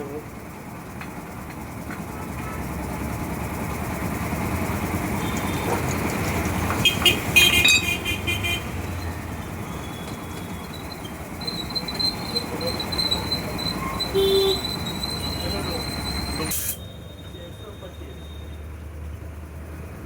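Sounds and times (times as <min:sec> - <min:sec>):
road traffic: 0:00.0 - 0:20.0
car horn: 0:05.2 - 0:06.0, 0:06.7 - 0:09.1, 0:13.8 - 0:15.6.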